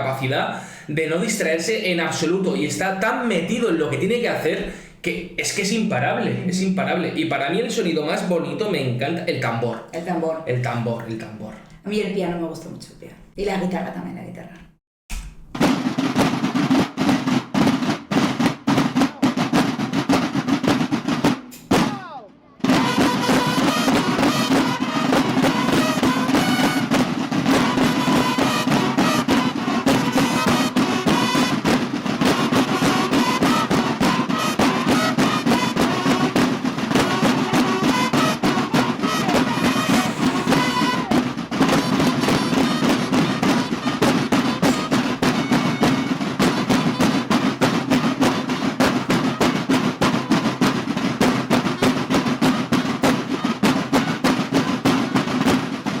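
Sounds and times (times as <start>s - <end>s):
marching snare and bass drums: 0.0s - 12.3s, 15.1s - 56.0s
bugle notes: 18.2s - 55.4s.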